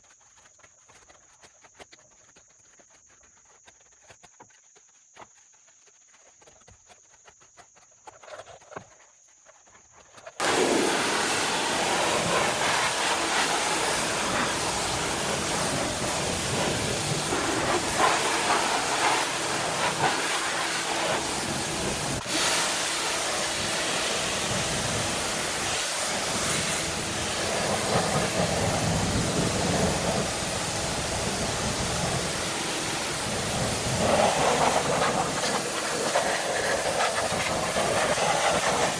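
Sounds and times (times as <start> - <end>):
pressure washer spray hissing: 10.4 - 38.9.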